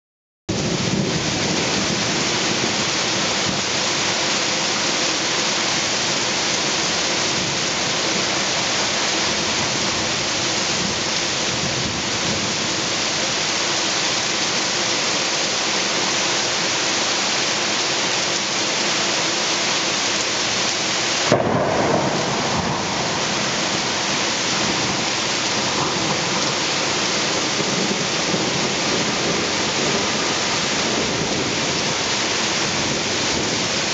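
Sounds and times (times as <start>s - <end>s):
thunder crack and rumble: 0.5s - 2.8s, 21.2s - 33.9s
heavy rain pouring: 0.5s - 33.9s.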